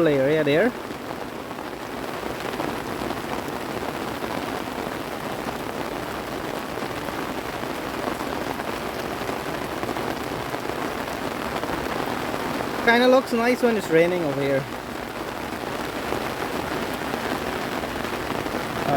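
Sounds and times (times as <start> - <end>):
steady rainfall: 0.0 - 18.9.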